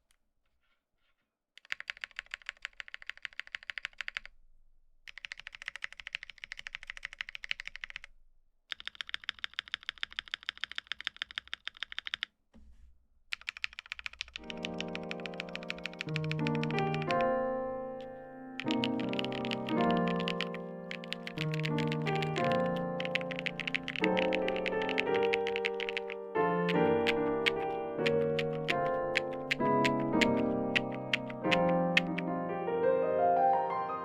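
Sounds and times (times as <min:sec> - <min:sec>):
fast typing on mechanical keyboard: 0:01.6 - 0:04.3, 0:05.1 - 0:08.1, 0:08.7 - 0:12.3, 0:13.3 - 0:32.3
music: 0:14.4 - 0:34.0.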